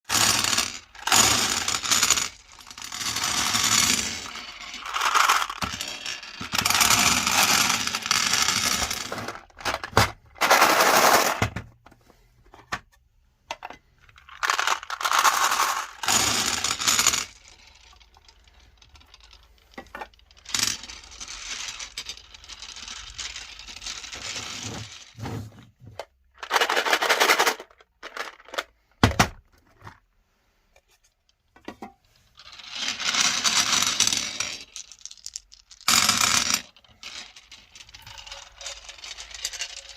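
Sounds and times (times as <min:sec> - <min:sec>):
meat grinder crunching hard candy: 0:00.0 - 0:08.9.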